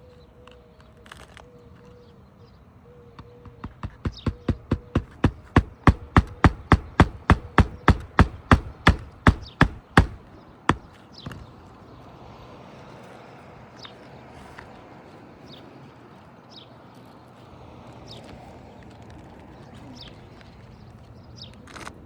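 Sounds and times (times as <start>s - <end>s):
hammer nailing shingle: 3.2s - 11.4s.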